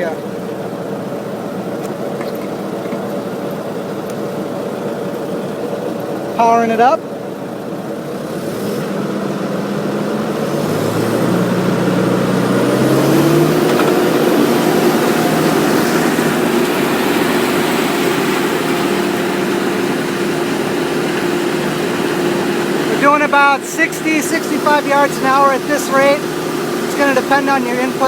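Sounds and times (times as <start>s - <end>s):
grinder diesel engine revving: 0.0s - 28.0s.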